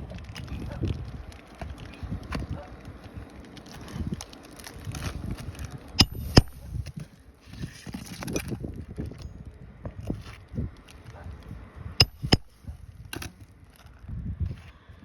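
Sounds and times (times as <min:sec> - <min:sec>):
sharp knocks: 0:06.0 - 0:06.6, 0:12.0 - 0:12.6
light taps and handling noise: 0:12.0 - 0:13.3.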